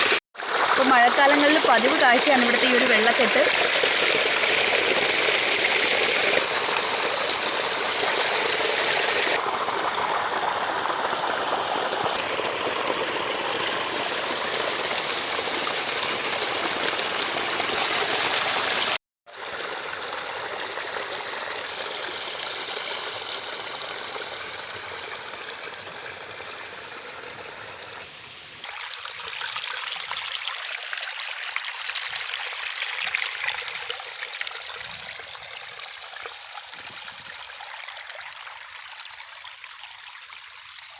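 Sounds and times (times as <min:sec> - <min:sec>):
stream water rushing and trickling: 0:00.0 - 0:40.9.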